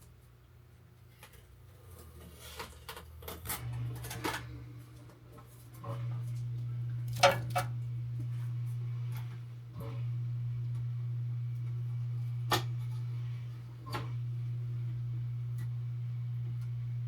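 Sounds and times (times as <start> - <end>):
steady low hum: 3.2 - 17.0.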